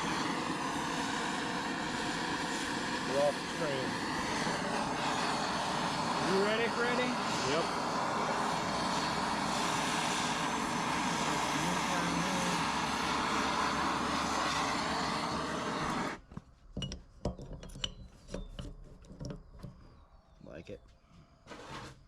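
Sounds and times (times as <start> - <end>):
gas torch flame hissing: 0.0 - 16.2.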